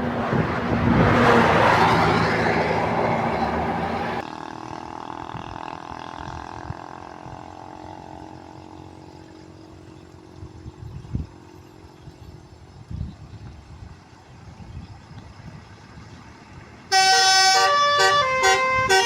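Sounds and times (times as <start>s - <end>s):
bus engine running: 0.0s - 9.6s, 15.4s - 19.0s.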